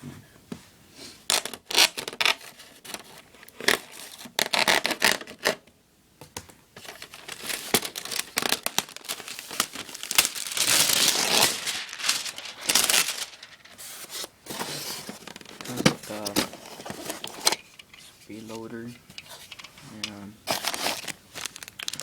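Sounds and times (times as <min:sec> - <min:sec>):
tape and cardboard ripping: 0:01.3 - 0:05.6, 0:06.8 - 0:17.6, 0:20.4 - 0:22.0
knife cutting packaging: 0:06.8 - 0:13.2, 0:20.5 - 0:22.0.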